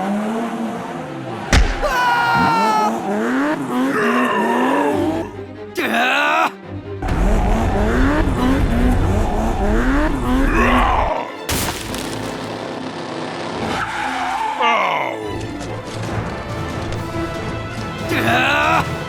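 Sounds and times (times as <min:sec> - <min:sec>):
sharp impact: 0:01.5 - 0:02.5
tyres squealing and skidding: 0:01.5 - 0:06.5, 0:13.6 - 0:15.6.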